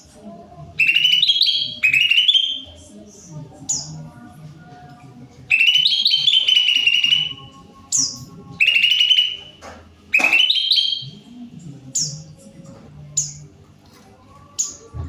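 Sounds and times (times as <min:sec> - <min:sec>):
bird singing trilled phrases: 0:00.8 - 0:02.8, 0:03.6 - 0:04.0, 0:05.5 - 0:11.3, 0:11.9 - 0:12.5, 0:14.6 - 0:14.9
high falling bird whistles: 0:08.0 - 0:09.5, 0:10.2 - 0:11.2.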